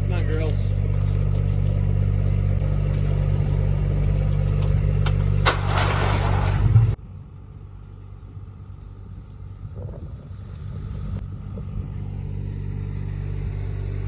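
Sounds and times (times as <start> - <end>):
vehicle engine droning: 0.0 - 14.0
loud engine cutting off: 10.8 - 14.0.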